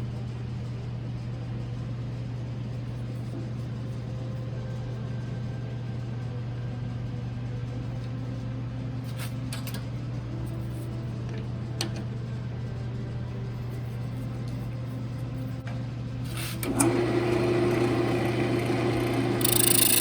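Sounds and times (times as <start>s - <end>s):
wood lathe motor humming: 16.6s - 20.0s
sharp clicks: 19.4s - 20.0s.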